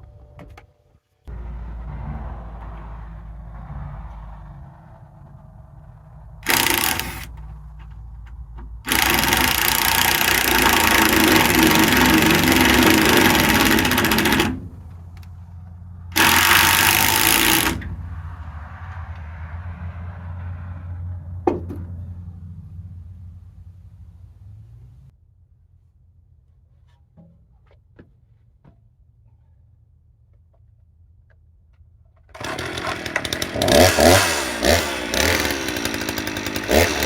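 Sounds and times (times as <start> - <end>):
engine running steadily: 1.3 - 19.4
harsh mechanical noise bursts: 6.4 - 7.3.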